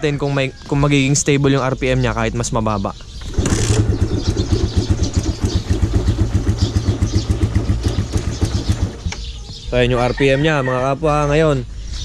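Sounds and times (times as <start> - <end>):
motorcycle engine starting and idling: 3.2 - 9.4
electric starter: 3.3 - 5.5.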